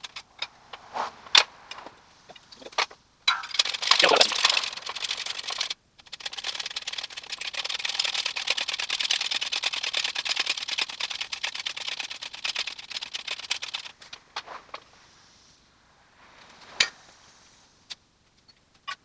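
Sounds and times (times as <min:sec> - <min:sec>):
sharp clicks of a tool: 0:03.3 - 0:13.9.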